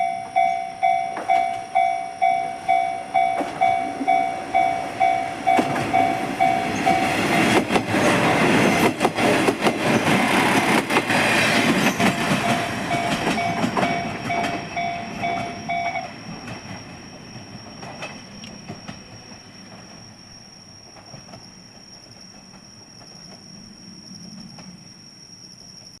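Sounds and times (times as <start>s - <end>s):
level crossing bell ringing: 0.0s - 7.2s, 12.5s - 16.1s
train wheels clacking on rails: 0.0s - 20.1s, 20.9s - 23.4s.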